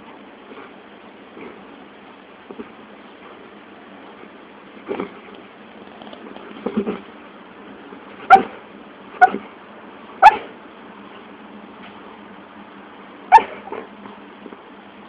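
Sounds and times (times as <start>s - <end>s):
puppy yipping: 8.3s - 8.6s, 9.2s - 9.4s, 10.2s - 10.5s, 13.3s - 13.7s.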